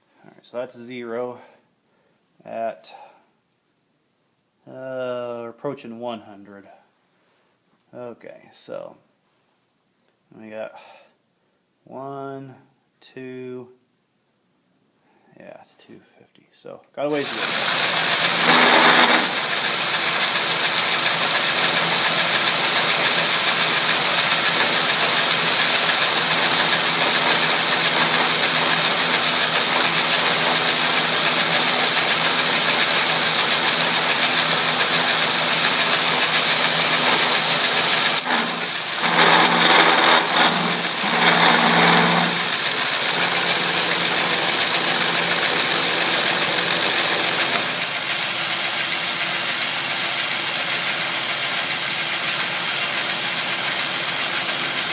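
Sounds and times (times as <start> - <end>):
lathe milling metal with chatter: 17.2 - 54.9.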